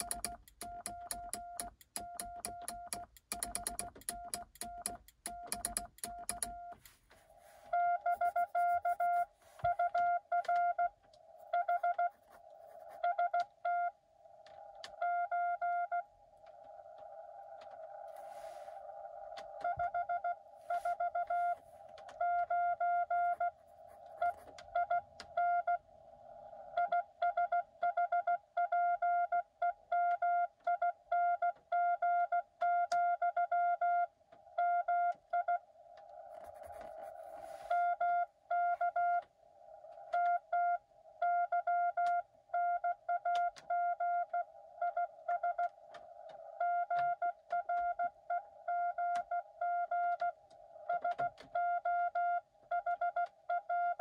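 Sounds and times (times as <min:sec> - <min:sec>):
morse code beeping: 0:00.0 - 0:07.0, 0:07.6 - 0:13.9, 0:19.6 - 0:25.7
radio band noise hiss: 0:18.0 - 0:19.2.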